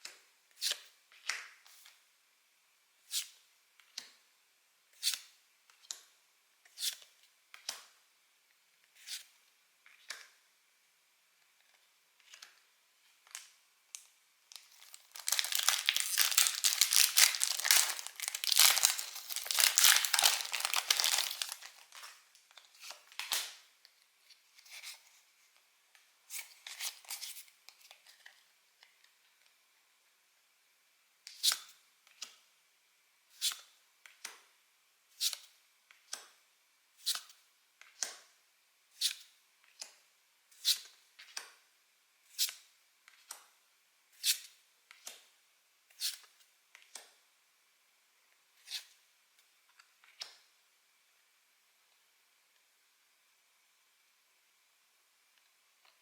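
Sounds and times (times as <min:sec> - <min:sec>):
crinkly wrapper tearing: 0:14.5 - 0:22.1.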